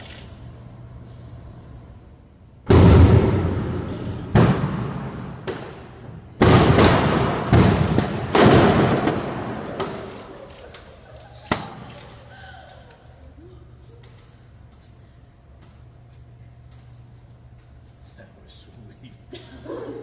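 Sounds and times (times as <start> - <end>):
fireworks blasts: 2.7 - 10.2.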